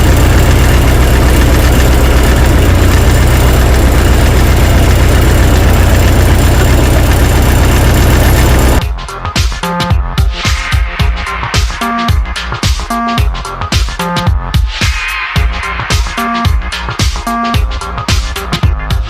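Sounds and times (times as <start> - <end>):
tractor engine running: 0.0 - 8.8.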